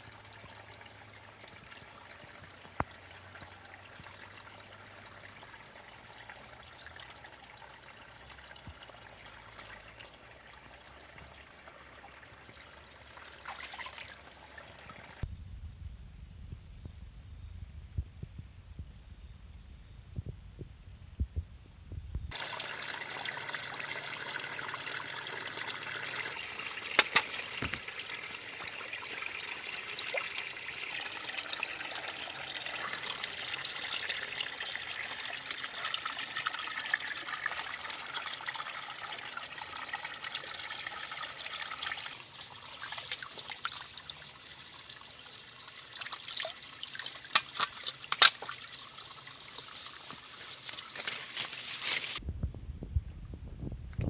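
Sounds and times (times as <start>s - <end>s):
water trickling: 22.3s - 52.2s.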